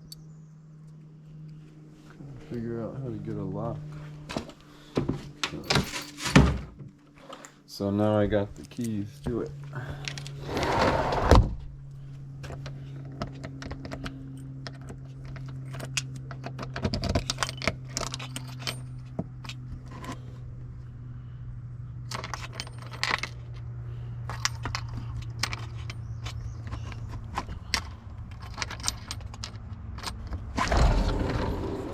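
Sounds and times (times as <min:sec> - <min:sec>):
steady low hum: 0:00.0 - 0:31.9
keys jangling and clicking: 0:05.4 - 0:06.4, 0:13.4 - 0:20.2, 0:22.1 - 0:23.6, 0:24.2 - 0:30.5.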